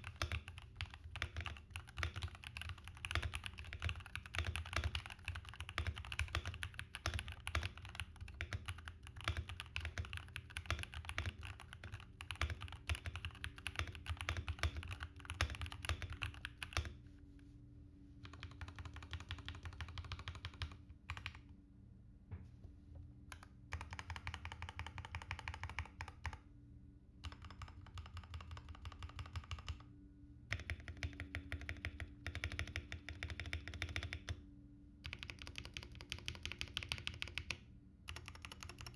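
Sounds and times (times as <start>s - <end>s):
mechanical keyboard typing: 0.0s - 17.0s, 18.2s - 21.4s, 23.3s - 26.4s, 27.2s - 29.8s, 30.5s - 34.4s, 35.0s - 38.9s.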